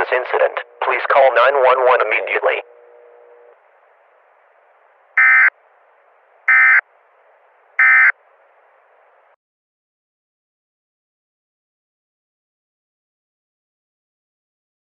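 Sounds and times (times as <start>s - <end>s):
faint radio hiss: 0.0s - 9.4s
digital data tone bursts: 5.2s - 5.5s, 6.5s - 6.8s, 7.8s - 8.2s.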